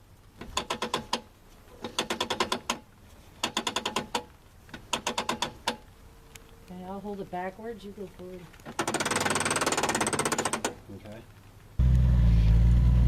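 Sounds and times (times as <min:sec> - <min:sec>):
axle locker ratcheting clicks: 0:00.4 - 0:02.8, 0:03.4 - 0:05.8, 0:08.7 - 0:10.8.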